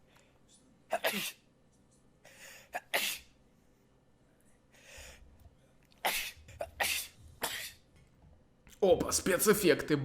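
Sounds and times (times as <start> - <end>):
person sneezing: 6.0 - 7.8.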